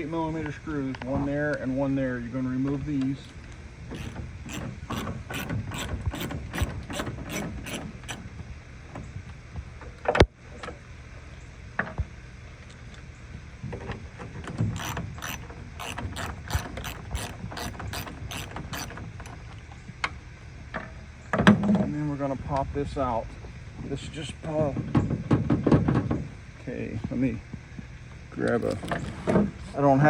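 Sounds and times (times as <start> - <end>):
hand ratchet clicking: 4.0 - 8.3, 14.4 - 19.4.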